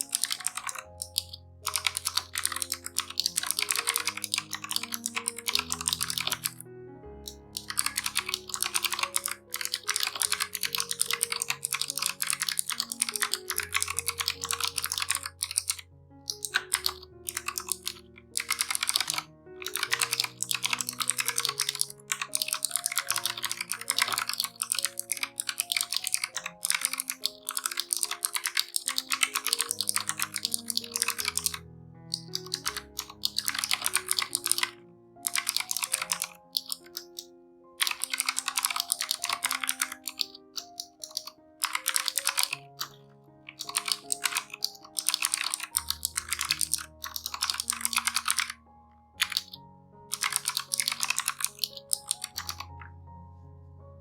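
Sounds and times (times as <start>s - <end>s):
mechanical keyboard typing: 0.0s - 6.6s, 7.2s - 48.6s, 49.2s - 53.0s
soft background music: 0.0s - 54.0s.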